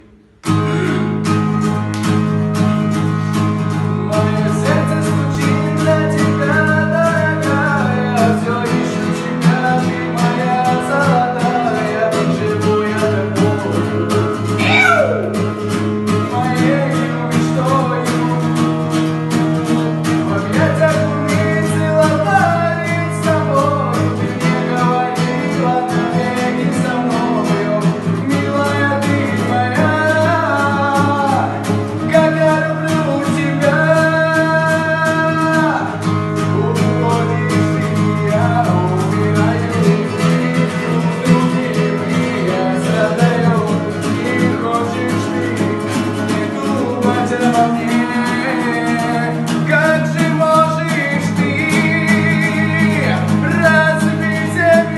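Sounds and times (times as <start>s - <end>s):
person singing pop song: 0.0s - 54.9s
strummed guitar chords: 0.0s - 54.9s.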